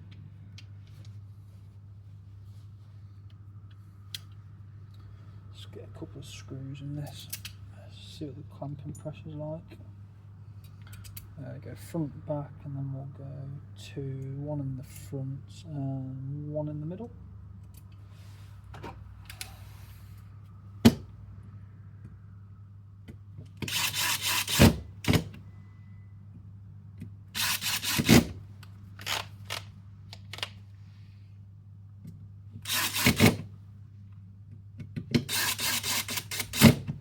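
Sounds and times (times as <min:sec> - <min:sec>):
low steady hum: 0:00.0 - 0:37.0
screwdriver rasping: 0:23.6 - 0:25.2, 0:27.4 - 0:28.3, 0:32.7 - 0:33.4, 0:35.2 - 0:36.8.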